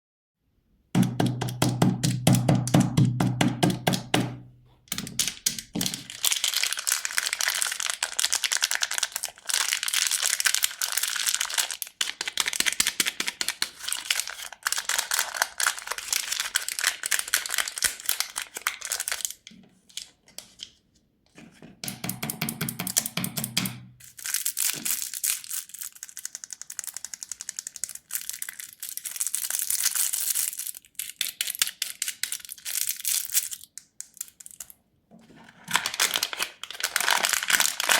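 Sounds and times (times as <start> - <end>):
plastic wrappers crinkling: 4.9 - 20.8, 24.0 - 37.9.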